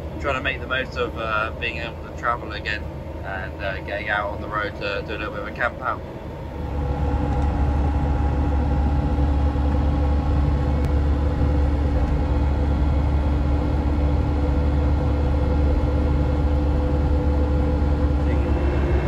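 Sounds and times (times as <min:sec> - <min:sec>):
diesel engine and tyres droning: 0:00.0 - 0:19.0.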